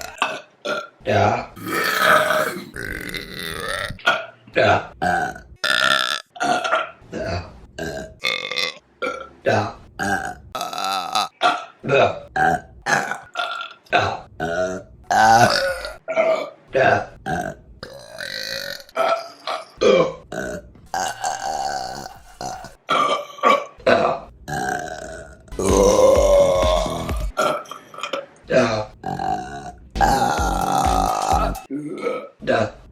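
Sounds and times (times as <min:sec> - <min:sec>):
woman burping: 0:01.6 - 0:04.2, 0:17.3 - 0:32.4.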